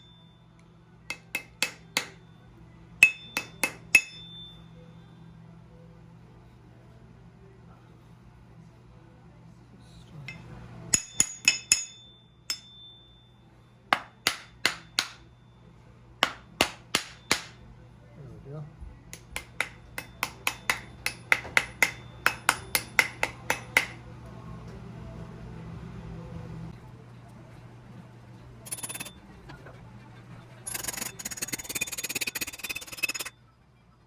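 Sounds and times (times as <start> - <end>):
hammer striking metal: 1.1 - 2.3, 3.0 - 4.6, 10.3 - 13.1, 13.9 - 15.3, 16.2 - 17.6, 19.1 - 24.0, 28.7 - 29.1.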